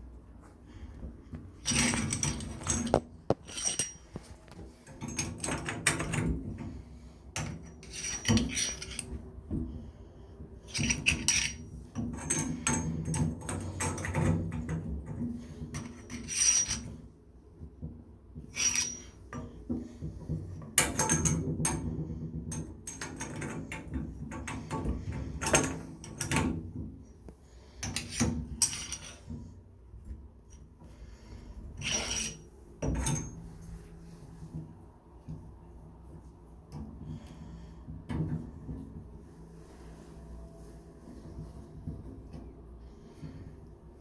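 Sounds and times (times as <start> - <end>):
hand tools clinking on metal: 7.4 - 9.1.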